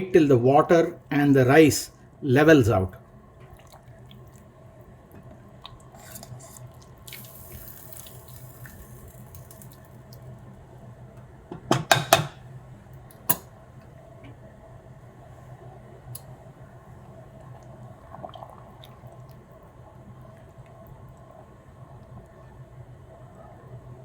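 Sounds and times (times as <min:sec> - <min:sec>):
rice water bubbling: 0:05.5 - 0:10.4, 0:16.6 - 0:22.3
spoon knocking against pot: 0:11.5 - 0:12.4.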